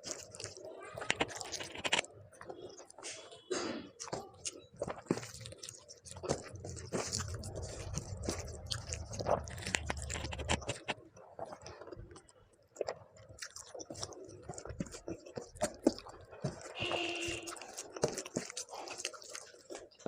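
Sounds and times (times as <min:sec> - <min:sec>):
person chewing food: 0:00.0 - 0:20.0
low rumble: 0:07.0 - 0:10.9.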